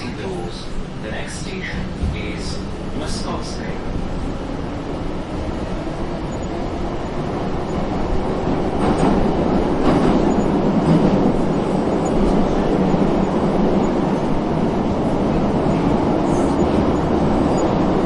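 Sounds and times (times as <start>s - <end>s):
metro train rumble: 0.0s - 18.0s
train wheel clacks: 7.1s - 17.8s.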